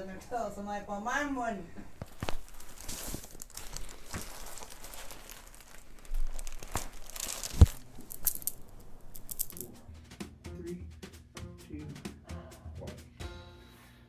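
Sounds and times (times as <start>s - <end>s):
crinkling and rustling: 1.4s - 9.9s
joint cracking: 1.7s - 9.9s.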